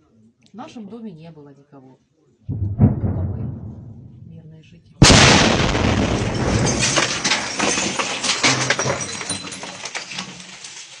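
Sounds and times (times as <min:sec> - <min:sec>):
falling debris crashing: 0:05.0 - 0:11.0.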